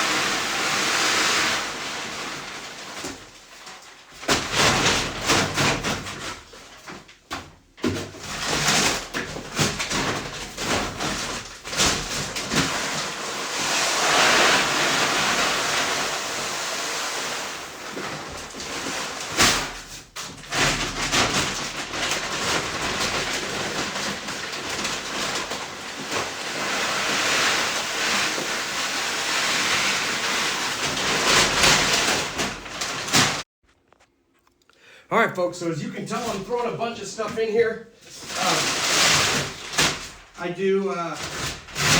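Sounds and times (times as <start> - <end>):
dry feed pouring into bucket: 0.0 - 5.0, 11.8 - 19.8, 20.6 - 33.4, 38.2 - 41.9.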